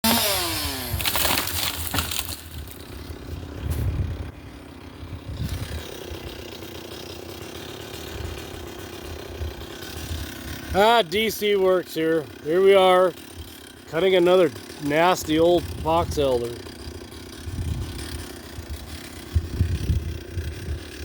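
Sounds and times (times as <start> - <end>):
chainsaw idling: 0.0 - 21.0
tree cracking and crashing down: 0.1 - 4.2.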